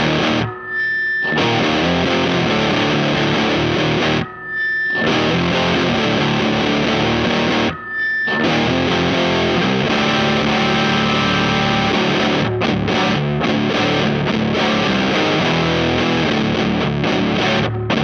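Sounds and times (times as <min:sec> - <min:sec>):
distorted electric guitar chords: 0:00.0 - 0:18.0.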